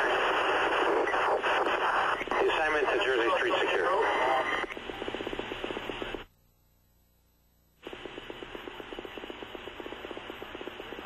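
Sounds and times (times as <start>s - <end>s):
pulsing radio hiss: 0.0s - 6.3s, 7.8s - 11.0s.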